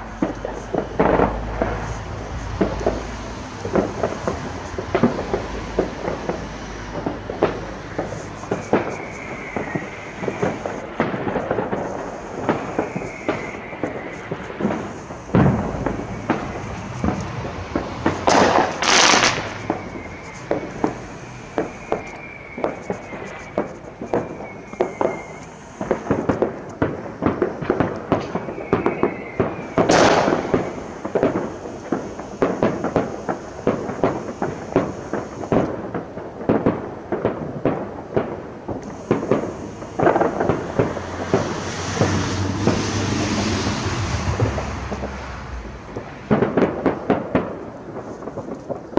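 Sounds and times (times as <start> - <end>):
firework bangs: 0.0 - 48.9
fireworks crackling and popping: 0.0 - 48.9
wavering high whistle: 7.6 - 26.2, 28.2 - 35.6.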